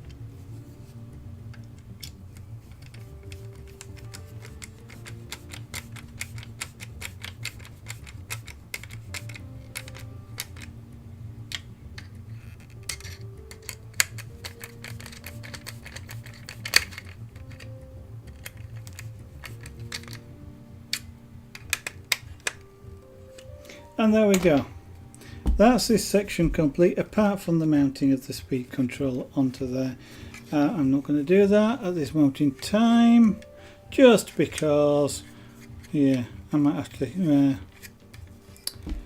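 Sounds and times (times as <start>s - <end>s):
soft background music: 0.0s - 39.0s
clicks of plastic parts and tools: 1.5s - 10.7s, 11.5s - 20.2s, 20.9s - 22.6s.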